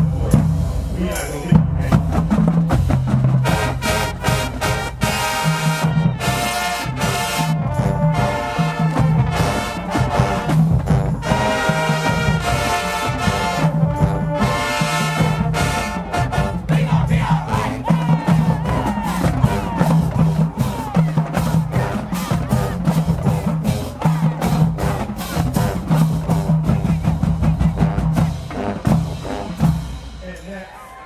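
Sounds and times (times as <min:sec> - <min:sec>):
drum line steady beat: 0:00.0 - 0:31.0
marching band brass chords: 0:00.0 - 0:31.0.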